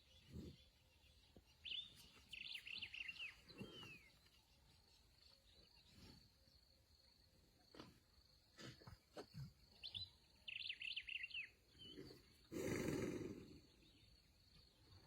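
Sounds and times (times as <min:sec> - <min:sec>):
bird chirping: 0:00.0 - 0:06.8, 0:09.6 - 0:12.5
animal snoring: 0:11.9 - 0:13.8.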